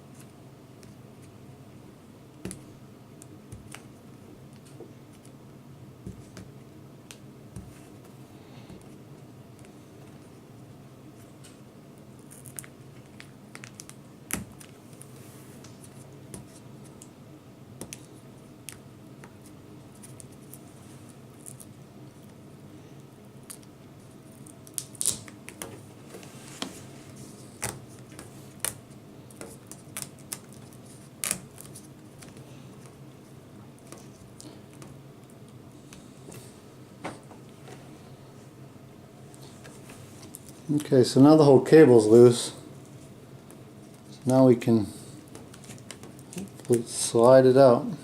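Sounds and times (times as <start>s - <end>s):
steady low hum: 0.0s - 48.0s.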